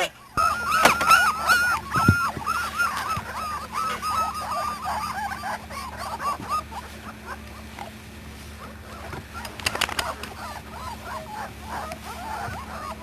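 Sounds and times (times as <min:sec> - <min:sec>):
puppies squeaking and whimpering: 0:00.0 - 0:13.0
sharp clicks: 0:09.4 - 0:10.4.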